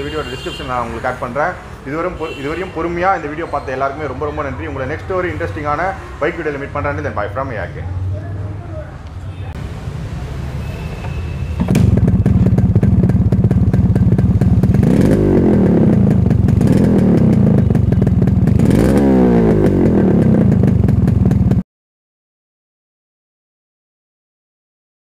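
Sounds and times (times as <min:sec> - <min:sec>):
motorcycle engine revving: 0:11.6 - 0:21.6.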